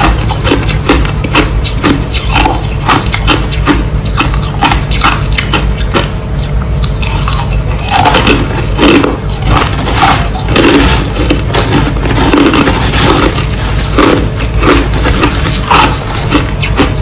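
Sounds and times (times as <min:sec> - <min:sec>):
crushed ice crunching between teeth: 0:06.8 - 0:17.0.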